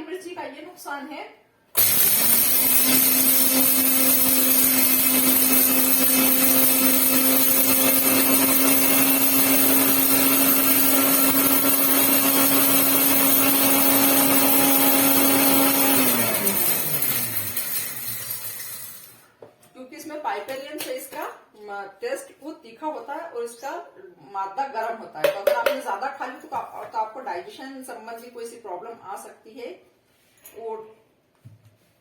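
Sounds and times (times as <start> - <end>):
electric mixer grinder grinding: 1.8 - 19.3.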